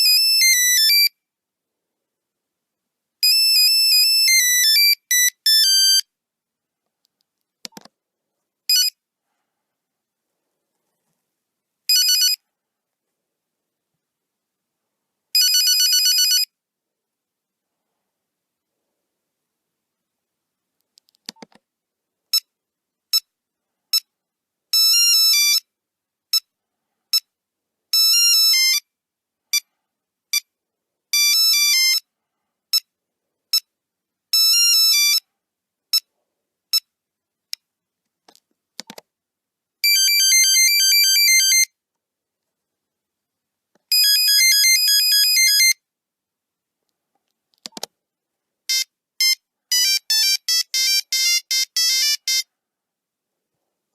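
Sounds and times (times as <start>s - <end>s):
click: 6.9s - 7.9s, 46.9s - 47.9s
monophonic phone ringtone: 11.9s - 12.4s, 15.4s - 16.5s, 39.8s - 41.7s, 43.9s - 45.8s, 48.7s - 52.5s.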